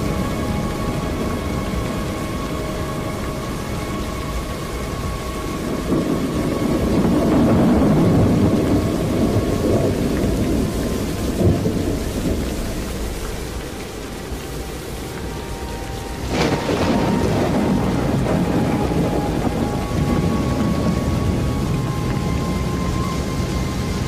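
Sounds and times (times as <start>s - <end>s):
rolling thunder: 0.0s - 24.0s
steady rain: 0.0s - 24.0s
sharp thunder crack: 6.0s - 10.7s, 16.3s - 21.4s.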